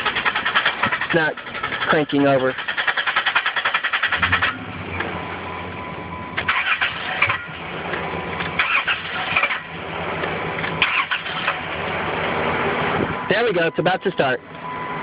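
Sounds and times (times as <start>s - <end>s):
car engine cranking: 0.0s - 5.2s, 6.3s - 13.0s.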